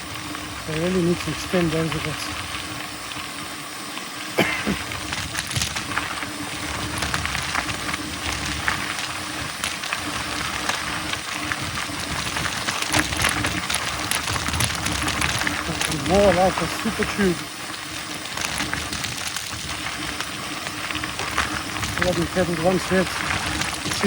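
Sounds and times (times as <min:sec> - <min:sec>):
bike rattling over bumps: 0:00.0 - 0:24.0
bike tyres rushing on dirt: 0:00.0 - 0:24.0.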